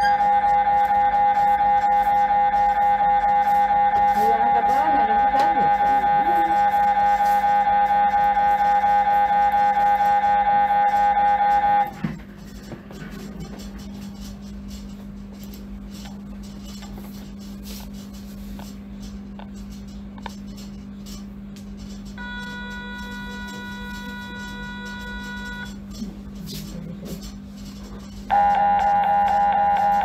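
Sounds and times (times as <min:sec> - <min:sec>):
higher buzzing tone: 0:00.0 - 0:12.0
mri scanner low hum: 0:00.0 - 0:30.0.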